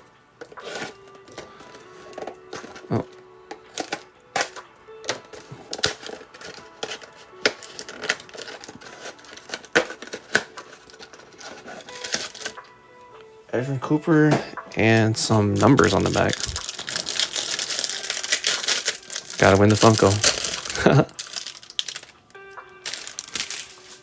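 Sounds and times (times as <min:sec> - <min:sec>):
faint background music: 0:00.0 - 0:24.0
trading cards clicking and snapping: 0:03.6 - 0:12.6, 0:15.5 - 0:22.2, 0:22.8 - 0:23.8.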